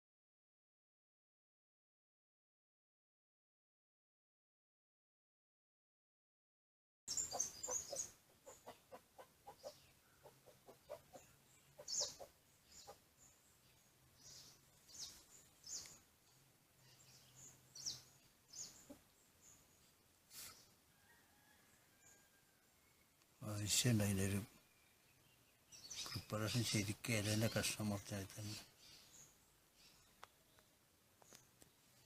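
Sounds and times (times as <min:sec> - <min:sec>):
high bird chirps: 0:07.1 - 0:13.4
low clucking bird calls: 0:07.1 - 0:22.5.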